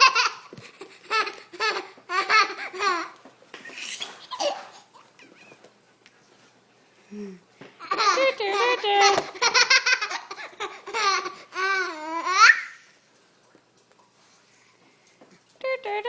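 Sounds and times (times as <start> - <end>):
baby laughing: 0.0 - 5.6, 7.8 - 12.8.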